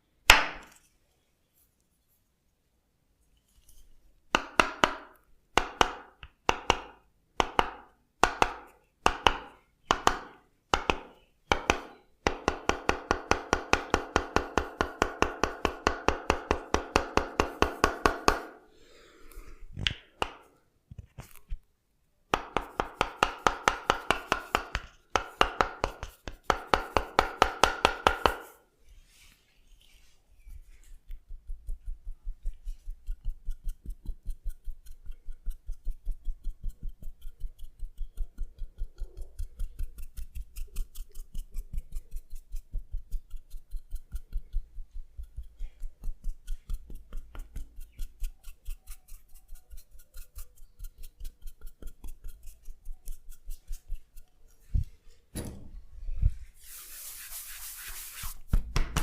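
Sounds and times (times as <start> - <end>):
percussive massage tapping: 4.3 - 18.6, 22.3 - 28.5, 31.1 - 48.6, 58.4 - 59.0.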